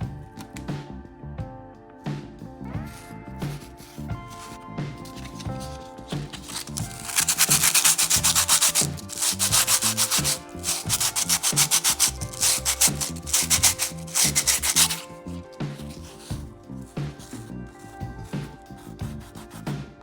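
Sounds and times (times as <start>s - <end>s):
knife grinding abrasive rasping: 4.3s - 16.4s.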